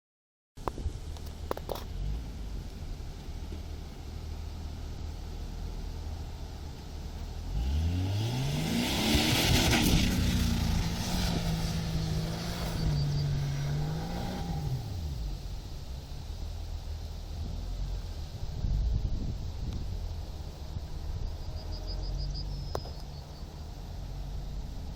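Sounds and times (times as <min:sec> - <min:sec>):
off-road vehicle engine revving: 0:01.9 - 0:15.9.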